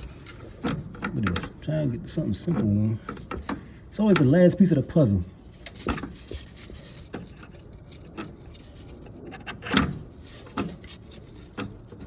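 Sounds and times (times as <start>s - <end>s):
hand tools and metal parts clicking: 0.0s - 1.6s.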